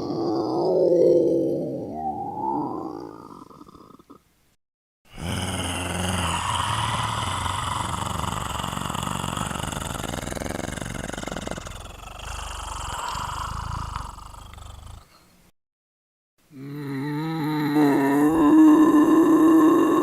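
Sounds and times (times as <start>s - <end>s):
rough rattling growl: 5.1s - 15.2s.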